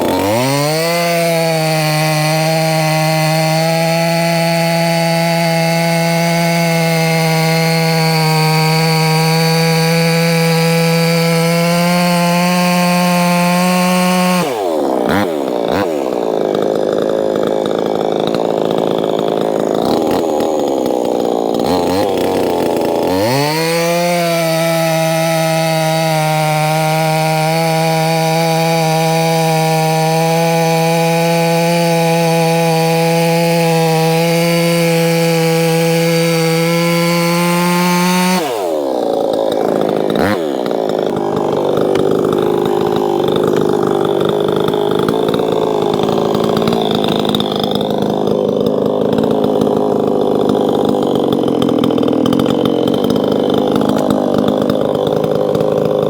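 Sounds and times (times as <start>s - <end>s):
chainsaw cutting firewood: 0.0s - 56.0s.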